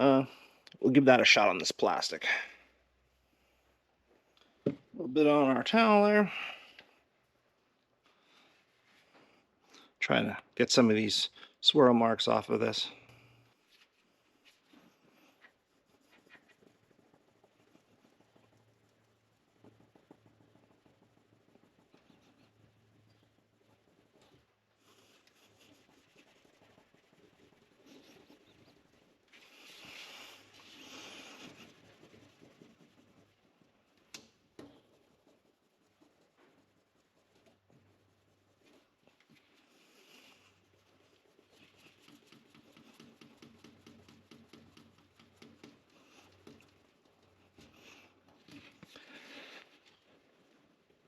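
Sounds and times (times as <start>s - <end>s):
cloth rubbing plastic: 13.4s - 51.0s.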